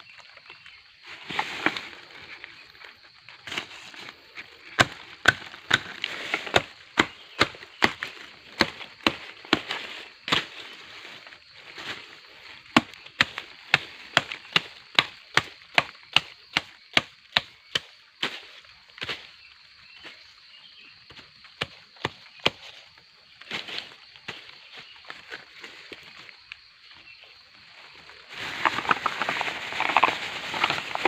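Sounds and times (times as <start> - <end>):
blade chopping bamboo: 4.6 - 10.6, 12.7 - 18.4.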